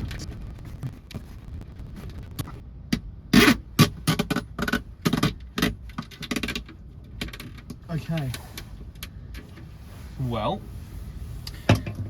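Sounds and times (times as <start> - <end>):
low rumble: 0.0 - 3.3.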